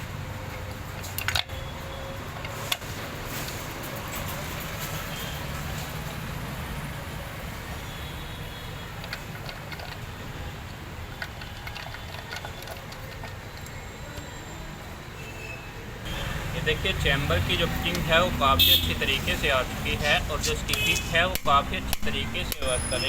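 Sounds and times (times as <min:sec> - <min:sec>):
light metal clicks and taps: 0:20.6 - 0:22.6.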